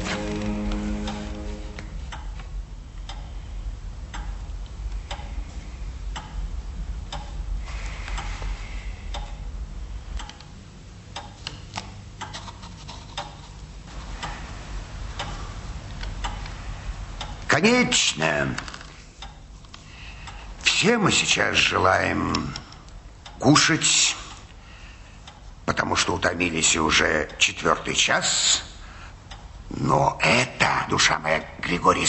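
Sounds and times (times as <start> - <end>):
clock ticking: 0.0 - 2.4, 4.0 - 5.3, 6.1 - 6.5, 7.1 - 7.4, 9.1 - 9.5, 15.2 - 15.4, 20.2 - 24.6
low steady hum: 0.0 - 32.0.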